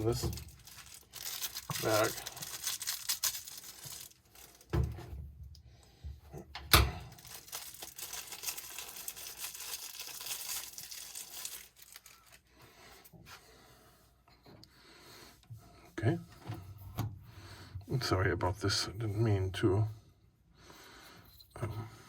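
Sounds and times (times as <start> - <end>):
packaging bag tearing and crinkling: 0.0 - 4.7, 7.1 - 12.4.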